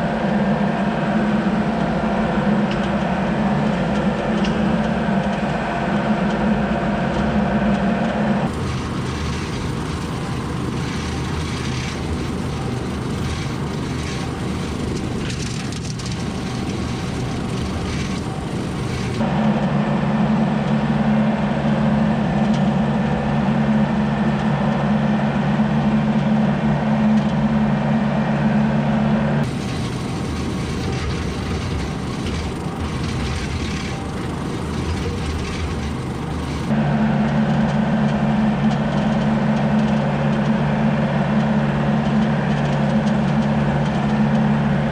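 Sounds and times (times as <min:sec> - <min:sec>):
vehicle driving hum: 0:02.0 - 0:44.9
road noise: 0:08.4 - 0:19.3, 0:29.4 - 0:36.8.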